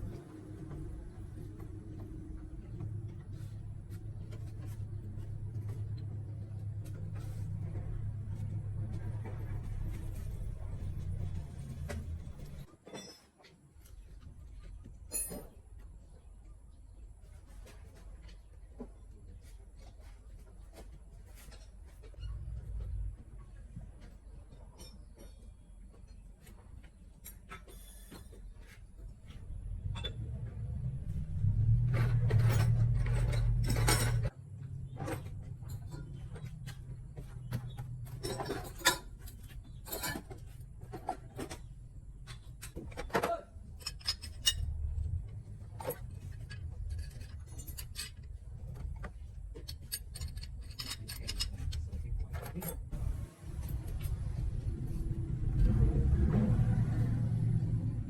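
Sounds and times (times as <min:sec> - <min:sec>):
low hum: 0:00.0 - 0:12.7, 0:29.3 - 0:58.0
metal tools clinking: 0:32.0 - 0:34.3, 0:35.1 - 0:41.7, 0:42.3 - 0:52.9.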